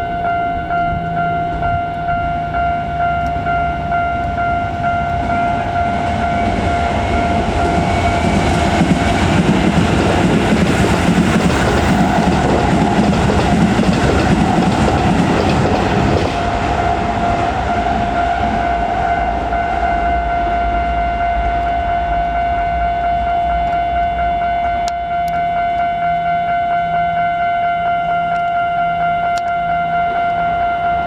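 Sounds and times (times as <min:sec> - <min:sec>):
crossing warning bell ringing: 0:00.0 - 0:31.0
train wheels clattering on rails: 0:04.2 - 0:21.9.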